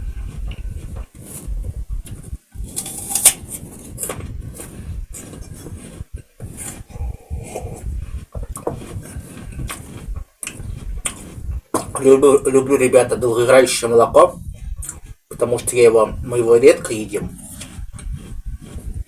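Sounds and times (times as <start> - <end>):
chewing and mouth sounds: 6.2 - 12.0, 14.3 - 15.2.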